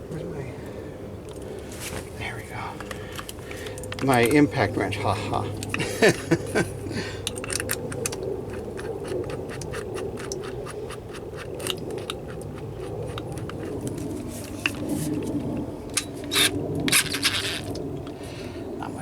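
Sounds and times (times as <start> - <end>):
steady low hum: 0.0 - 19.0
hand ratchet clicking: 7.2 - 14.0.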